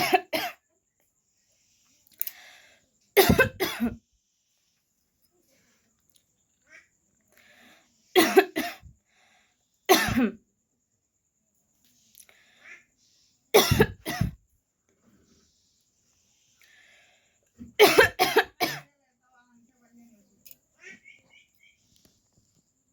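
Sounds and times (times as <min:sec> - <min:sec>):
woman coughing: 0:00.0 - 0:00.6, 0:03.2 - 0:04.0, 0:08.2 - 0:08.9, 0:09.9 - 0:10.4, 0:13.6 - 0:14.4, 0:17.8 - 0:18.9
soft breaths: 0:01.1 - 0:03.2, 0:04.0 - 0:08.2, 0:08.9 - 0:09.9, 0:11.7 - 0:13.5, 0:14.3 - 0:17.8.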